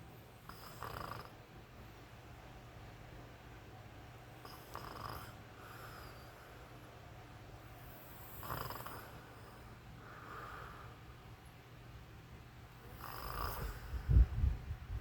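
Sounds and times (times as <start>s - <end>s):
man snoring: 0.5s - 1.3s, 4.5s - 5.4s, 8.2s - 9.2s, 12.9s - 13.9s.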